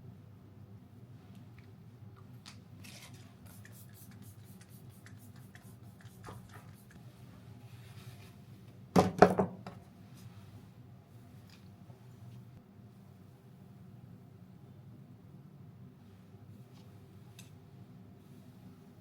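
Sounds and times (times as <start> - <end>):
low steady hum: 9.6 - 19.0.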